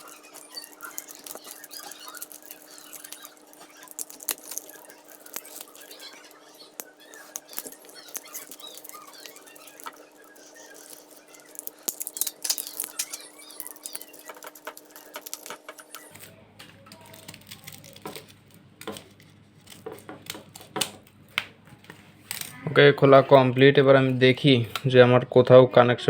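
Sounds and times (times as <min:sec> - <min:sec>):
blade scratching plastic wire cover: 0:00.0 - 0:20.9.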